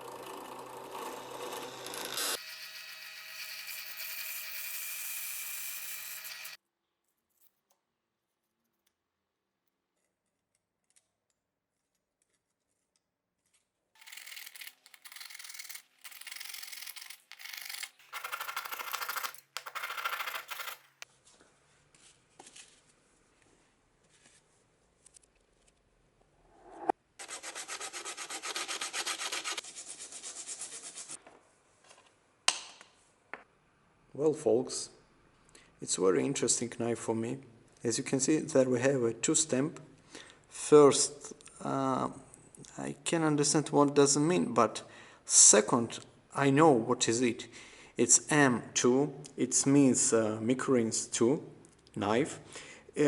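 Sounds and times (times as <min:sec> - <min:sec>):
small motor running: 0:00.0 - 0:06.6.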